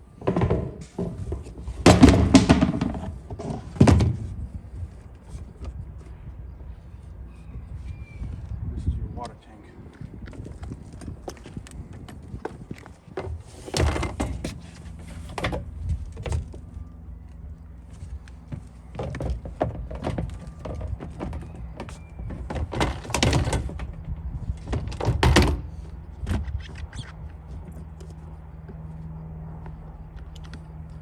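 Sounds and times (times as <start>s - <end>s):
knocks on metal roof: 0.2s - 4.2s
footsteps on metal: 9.9s - 31.0s.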